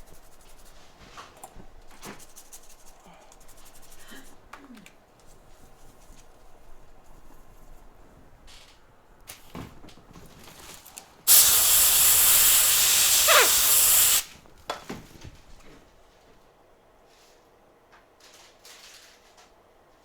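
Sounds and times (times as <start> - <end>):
spray can hissing: 11.3 - 14.3.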